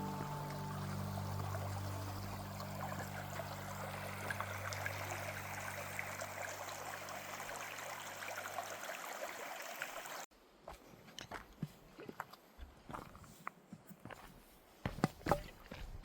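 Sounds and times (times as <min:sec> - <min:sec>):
low held music chord: 0:00.0 - 0:07.4
stream babbling: 0:00.0 - 0:10.2.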